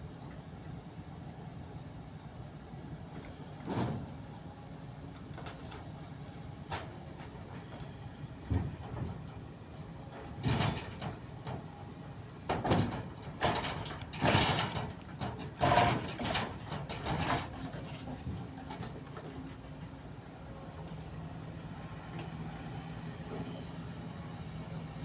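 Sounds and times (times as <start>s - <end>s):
excavator engine running: 3.1s - 25.0s
metallic clanks and scrapes: 12.7s - 19.6s.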